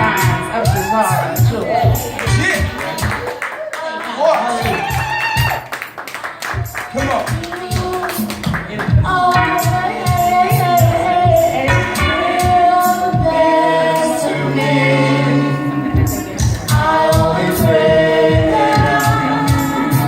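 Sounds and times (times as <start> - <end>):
steady drum beat: 0.0 - 3.3, 4.7 - 5.7, 6.6 - 14.1, 15.7 - 20.0
person singing long notes: 8.8 - 20.0.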